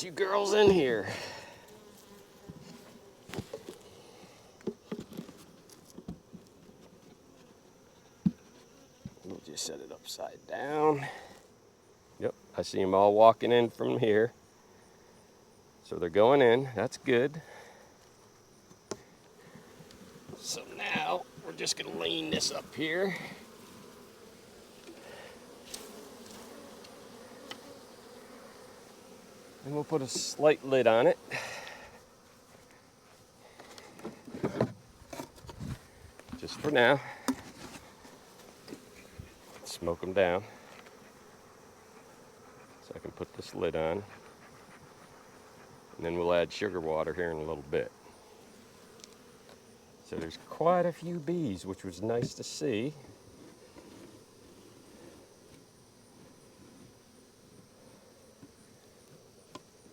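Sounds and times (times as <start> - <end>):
honeybees buzzing: 0.0 - 59.9.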